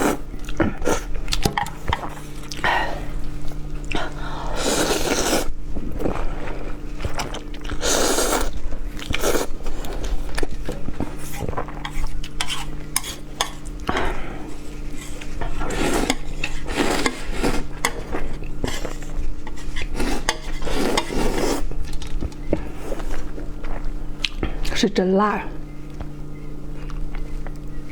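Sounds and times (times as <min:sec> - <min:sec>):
slurping: 0:00.0 - 0:24.4
steady low hum: 0:00.0 - 0:27.9
utensils scraping a bowl: 0:09.6 - 0:22.1.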